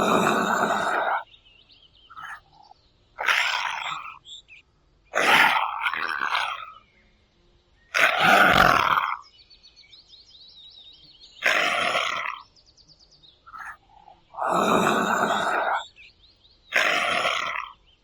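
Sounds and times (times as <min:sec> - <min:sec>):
wild animal calling: 0:00.0 - 0:01.2, 0:03.2 - 0:04.2, 0:05.2 - 0:06.6, 0:08.0 - 0:09.2, 0:11.4 - 0:12.4, 0:13.6 - 0:15.8, 0:16.7 - 0:17.7
faint high bird chirps: 0:01.1 - 0:04.7, 0:09.0 - 0:14.4.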